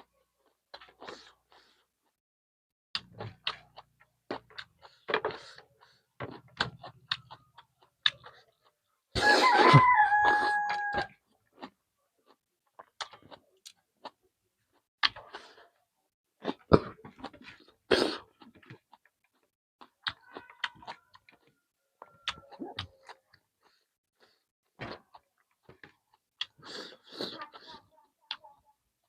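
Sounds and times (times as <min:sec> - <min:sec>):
mouth chewing and smacking: 0:03.0 - 0:09.8, 0:10.8 - 0:15.7, 0:16.4 - 0:28.5
rooster crowing: 0:09.2 - 0:11.1.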